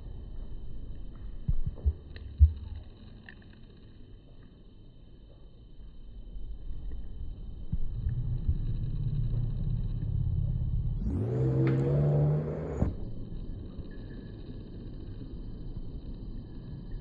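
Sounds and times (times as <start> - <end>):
vehicle engine rumbling and revving: 7.6 - 13.2.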